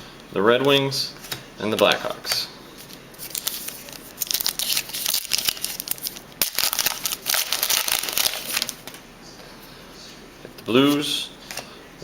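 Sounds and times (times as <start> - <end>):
foil wrapper tearing and crinkling: 3.2 - 8.9.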